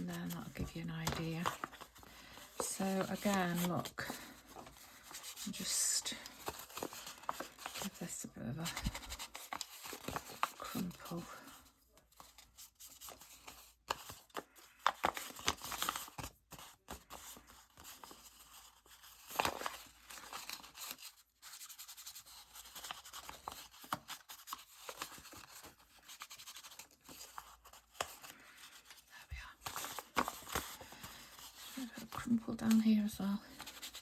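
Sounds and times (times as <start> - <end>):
paper crumpling and rustling: 0.0 - 34.0.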